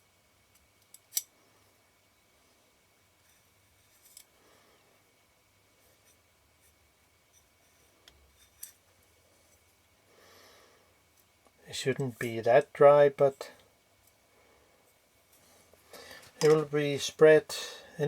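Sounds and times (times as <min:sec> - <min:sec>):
small metal parts clicking: 0:00.5 - 0:01.3.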